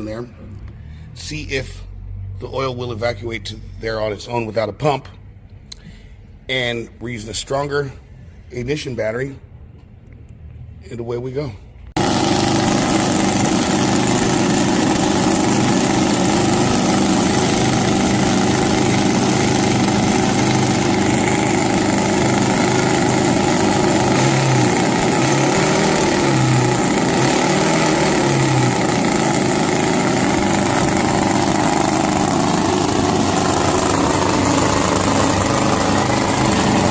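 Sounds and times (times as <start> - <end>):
model boat engine running: 12.0 - 36.9.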